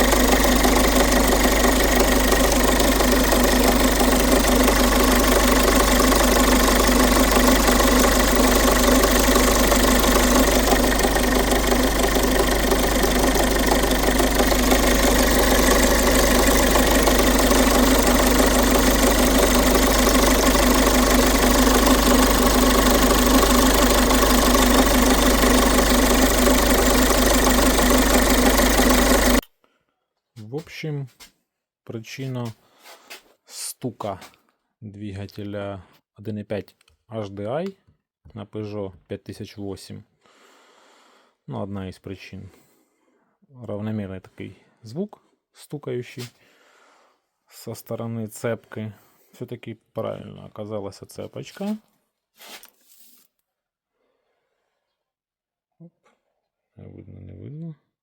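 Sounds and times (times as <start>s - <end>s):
diesel engine running: 0.0s - 29.4s
engine knocking: 0.0s - 29.4s.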